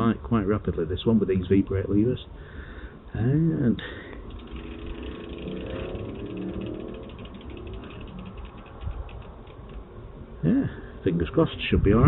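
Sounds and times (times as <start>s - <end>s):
low hum: 2.9s - 12.0s
bicycle hub ticking: 3.8s - 10.4s.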